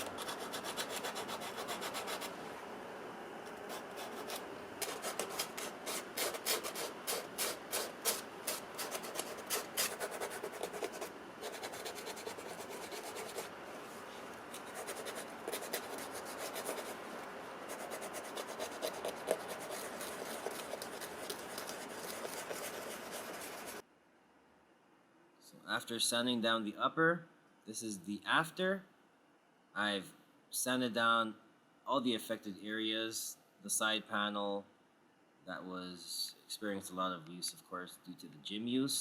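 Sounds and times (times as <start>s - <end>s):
sandpaper rubbing on leather: 0.0s - 2.4s, 3.6s - 13.5s, 14.5s - 23.8s.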